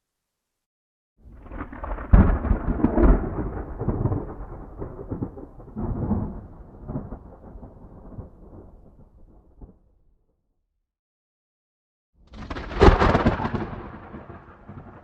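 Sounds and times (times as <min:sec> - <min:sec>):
thunder cracking and rumbling: 0:01.2 - 0:10.0, 0:12.3 - 0:15.0.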